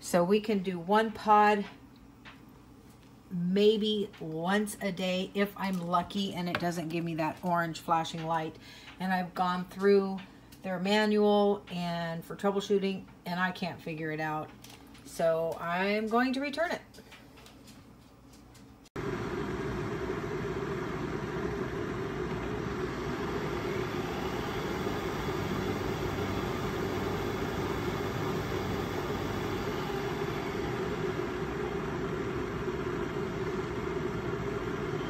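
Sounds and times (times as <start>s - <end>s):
machine humming and rumbling: 19.0s - 35.0s.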